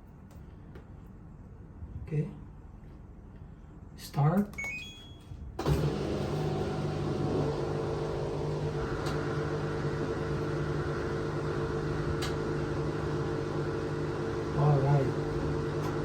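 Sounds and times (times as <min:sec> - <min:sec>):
washing machine humming: 0:05.6 - 0:16.0.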